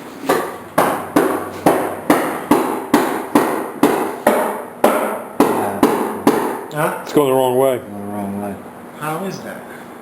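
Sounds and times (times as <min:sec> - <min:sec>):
hammer striking wooden frame: 0:00.2 - 0:06.7.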